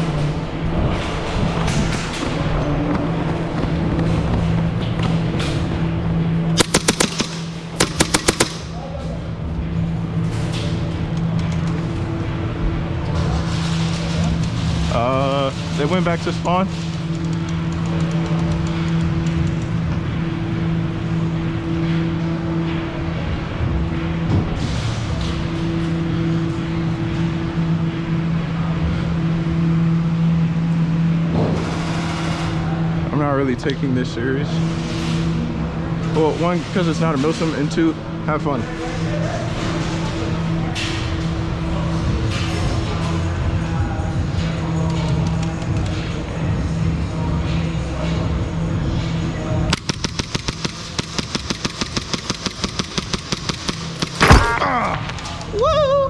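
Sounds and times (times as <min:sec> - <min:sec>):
low mechanical hum: 0:00.0 - 0:56.0
airsoft gun rapid shots: 0:06.6 - 0:08.8, 0:49.7 - 0:54.8.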